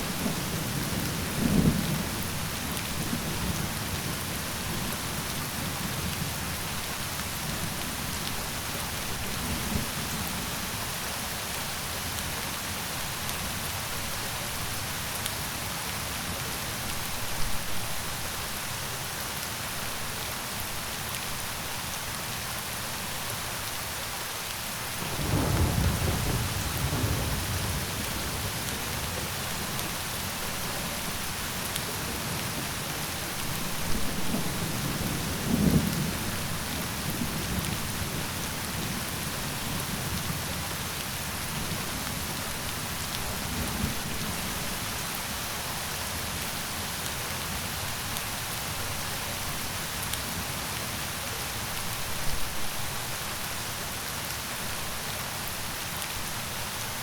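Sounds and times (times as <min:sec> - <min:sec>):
heavy rain falling: 0:00.0 - 0:57.0
low rolling thunder: 0:25.0 - 0:30.0, 0:33.6 - 0:40.7.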